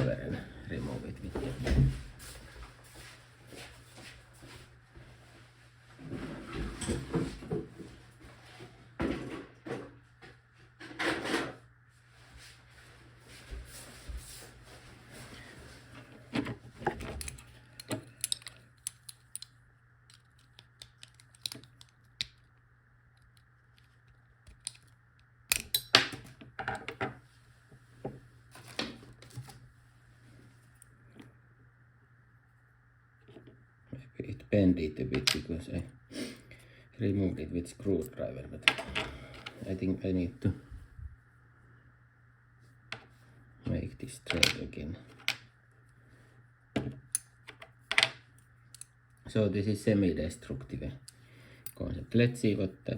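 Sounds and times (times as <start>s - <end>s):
screwdriver scraping metal padlock: 17.2s - 19.5s.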